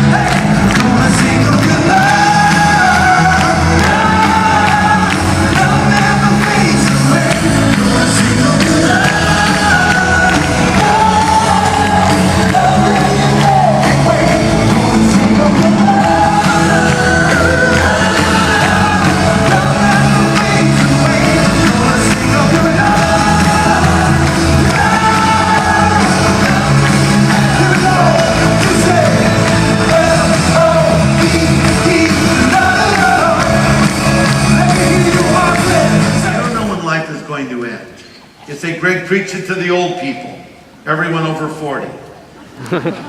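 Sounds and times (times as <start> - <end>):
person singing: 0.0 - 36.6
band backing music: 0.0 - 36.9.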